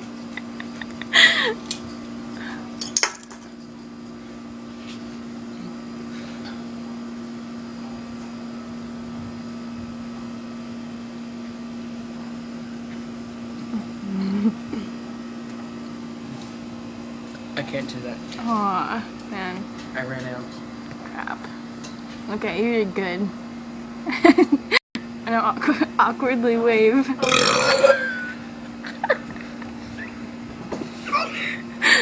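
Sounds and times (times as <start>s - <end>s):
steady low hum: 0.0s - 32.0s
throaty attempted burp: 27.2s - 28.3s.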